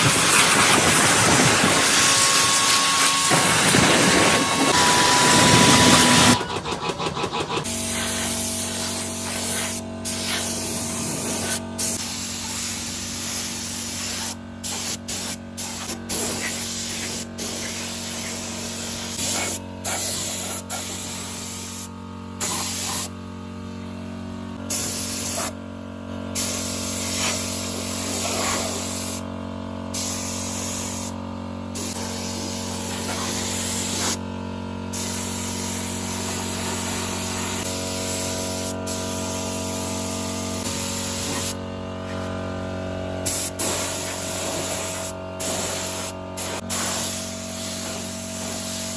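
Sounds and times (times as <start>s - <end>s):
pressurised spray hissing: 0.0s - 4.8s, 7.8s - 23.1s, 26.4s - 29.2s, 29.9s - 31.1s, 31.8s - 34.2s, 34.9s - 39.5s, 40.3s - 41.6s, 43.2s - 48.9s
motor hum: 0.0s - 48.9s.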